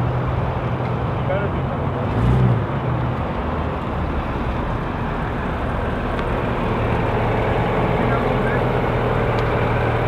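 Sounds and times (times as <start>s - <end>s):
car engine idling: 3.2s - 10.0s.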